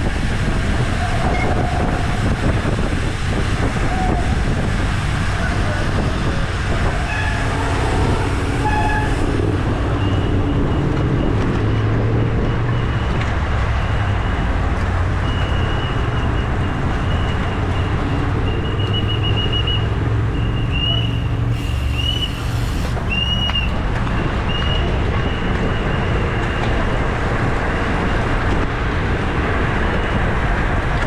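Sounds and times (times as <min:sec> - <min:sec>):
wind rushing over microphone: 0:00.0 - 0:13.6
bicycle tyre and road noise: 0:00.0 - 0:31.0.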